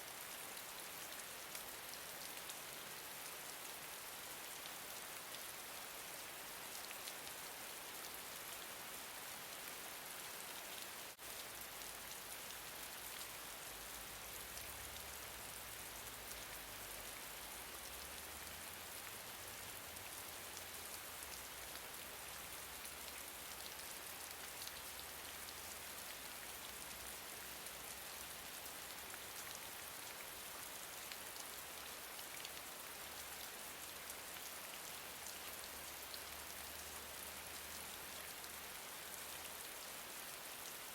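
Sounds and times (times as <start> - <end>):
gentle rain hiss: 0.0 - 40.9
raindrops pattering on surface: 10.5 - 40.9.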